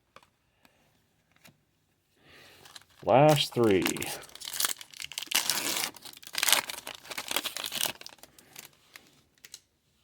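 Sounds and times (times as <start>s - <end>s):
foil wrapper crinkling: 2.6s - 9.6s.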